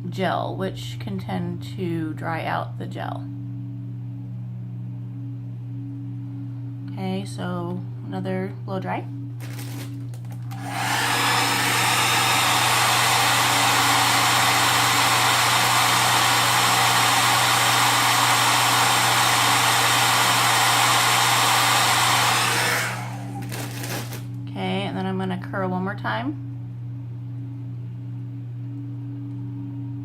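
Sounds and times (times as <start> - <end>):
blow dryer running: 9.4 - 24.4.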